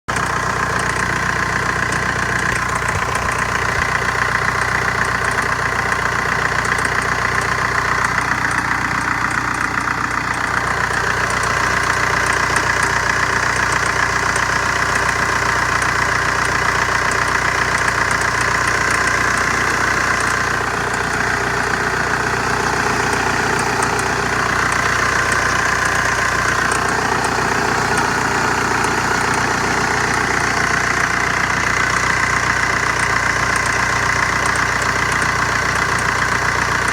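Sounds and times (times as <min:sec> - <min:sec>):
diesel engine idling: 0:00.1 - 0:36.9.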